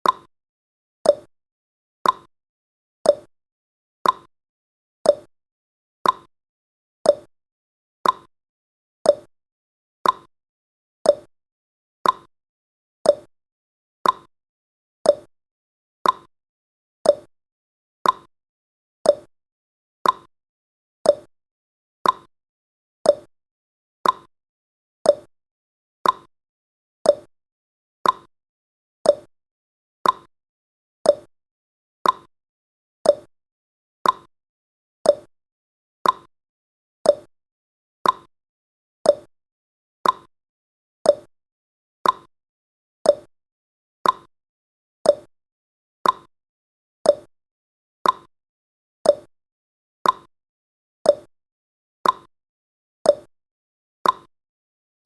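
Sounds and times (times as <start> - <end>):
clock tick-tock: 0.0 - 0.3, 1.1 - 1.3, 2.0 - 2.3, 3.1 - 3.3, 4.0 - 4.3, 5.1 - 5.3, 6.0 - 6.3, 7.1 - 7.3, 8.0 - 8.3, 9.1 - 9.3, 10.0 - 10.3, 11.1 - 11.3, 12.0 - 12.3, 13.1 - 13.3, 14.0 - 14.3, 15.0 - 15.3, 16.0 - 16.3, 17.0 - 17.3, 18.0 - 18.3, 19.0 - 19.3, 20.0 - 20.3, 21.0 - 21.3, 22.0 - 22.3, 23.0 - 23.3, 24.0 - 24.3, 25.0 - 25.3, 26.0 - 26.3, 27.0 - 27.3, 28.0 - 28.3, 29.0 - 29.3, 30.0 - 30.3, 31.0 - 31.3, 32.0 - 32.3, 33.0 - 33.3, 34.0 - 34.3, 35.0 - 35.3, 36.0 - 36.3, 37.0 - 37.3, 38.0 - 38.3, 39.0 - 39.3, 40.0 - 40.3, 41.0 - 41.3, 42.0 - 42.3, 43.0 - 43.3, 44.0 - 44.3, 45.0 - 45.3, 46.0 - 46.3, 47.0 - 47.3, 48.0 - 48.3, 49.0 - 49.3, 50.0 - 50.3, 51.1 - 51.3, 52.0 - 52.3, 53.1 - 53.3, 54.0 - 54.3.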